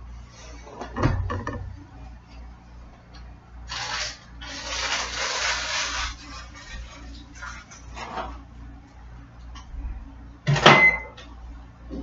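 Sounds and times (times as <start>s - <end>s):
low steady hum: 0.0s - 12.0s
water running from tap: 3.7s - 7.6s.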